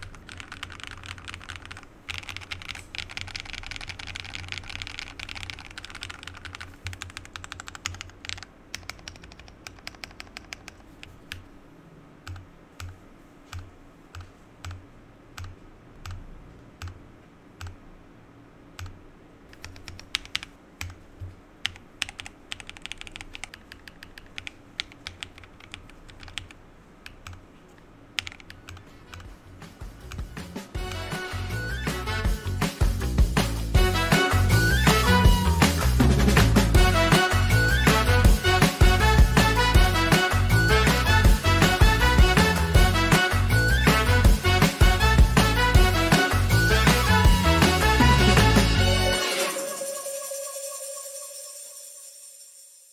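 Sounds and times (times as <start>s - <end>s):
mechanical keyboard typing: 0.0s - 11.4s, 12.2s - 16.2s, 18.8s - 21.0s, 21.6s - 29.3s.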